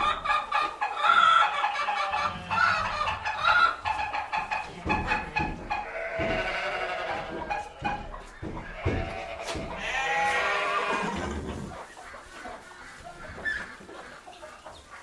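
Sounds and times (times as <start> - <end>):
animal bleating: 1.8 - 3.0, 4.6 - 11.7
shuffling: 2.6 - 15.0
knocks: 3.9 - 10.2.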